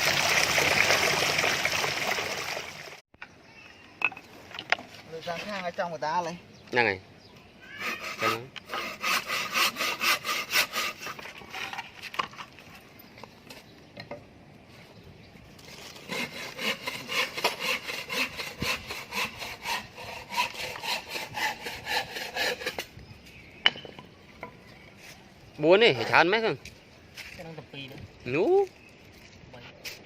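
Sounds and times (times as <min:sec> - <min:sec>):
handsaw cutting wood: 0:07.8 - 0:11.8, 0:15.6 - 0:22.9.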